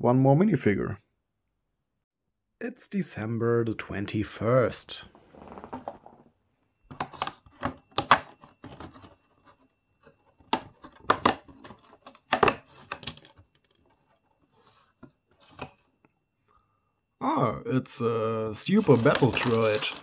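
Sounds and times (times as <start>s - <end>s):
packaging crinkling: 18.6s - 20.0s
cardboard tearing: 18.7s - 20.0s.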